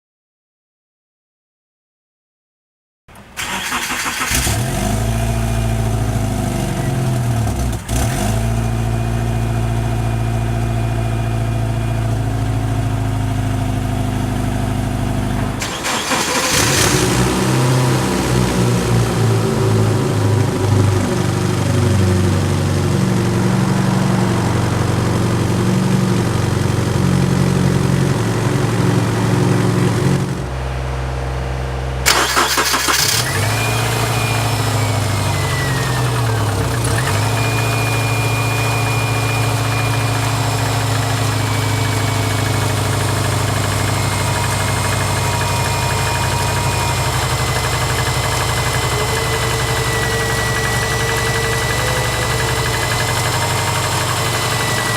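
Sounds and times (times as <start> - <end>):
engine cranking and restarting: 3.1 - 9.1, 12.9 - 30.5, 32.0 - 54.9
engine idling with high whine: 4.6 - 54.9
car engine knocking: 34.6 - 54.9.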